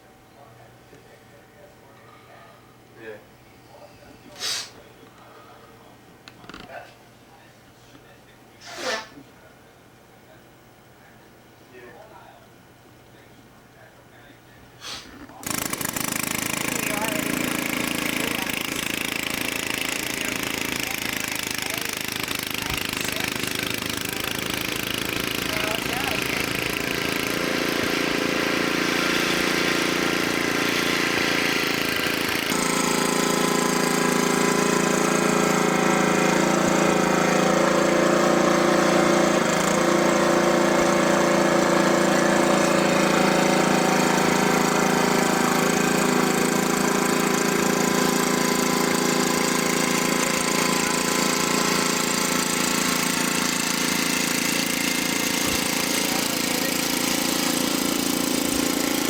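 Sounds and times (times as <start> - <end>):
small engine running: 15.4 - 59.0.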